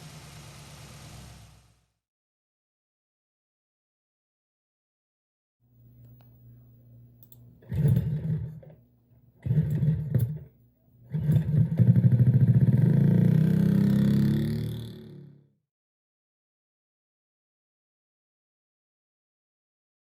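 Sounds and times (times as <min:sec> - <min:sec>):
engine idling and revving: 0:11.4 - 0:15.4.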